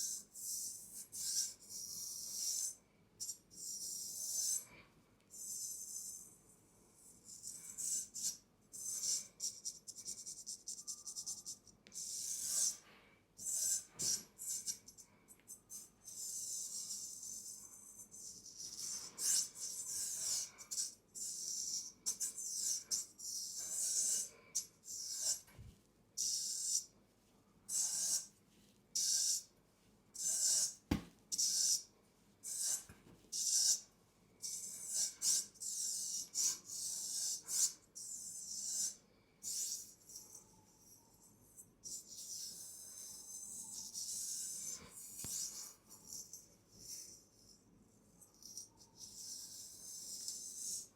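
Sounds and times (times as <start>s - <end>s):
soft knock: 30.9s - 31.1s.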